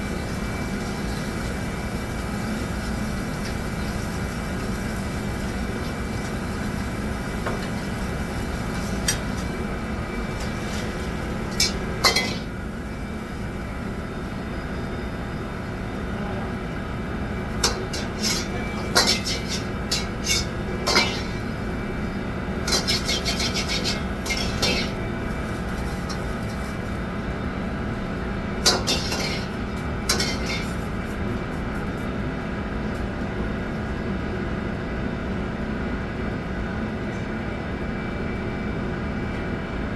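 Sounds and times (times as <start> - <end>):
steady background hum: 0.0 - 39.9
utensils and dishes clinking: 10.4 - 12.6, 17.6 - 21.6, 22.6 - 25.1, 28.6 - 30.8.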